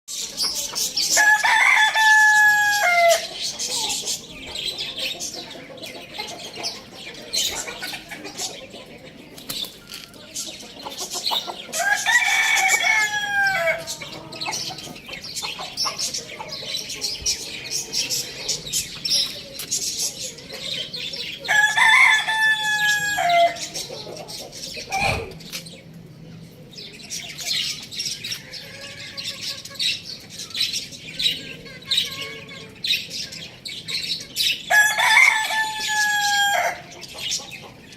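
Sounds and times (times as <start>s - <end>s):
hens clucking: 0.1s - 30.3s, 31.2s - 37.9s
rooster crowing: 1.2s - 3.3s, 11.8s - 14.0s, 21.5s - 23.6s, 34.7s - 36.9s.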